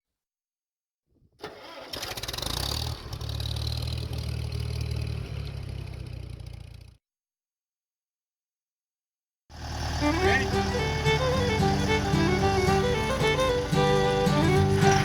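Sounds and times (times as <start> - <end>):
engine clatter: 1.4 - 7.0, 9.5 - 15.0
farm machine engine running: 9.6 - 15.0.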